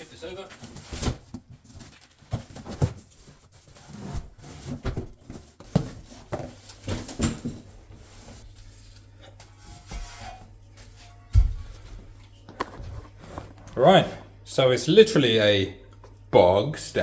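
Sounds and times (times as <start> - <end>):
boxed toilet knocking and thudding: 4.1 - 7.8.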